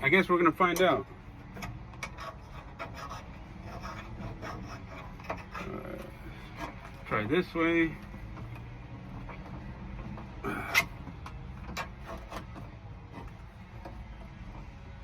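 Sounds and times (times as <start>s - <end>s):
metal tool scrape: 1.5s - 7.3s, 11.7s - 13.5s.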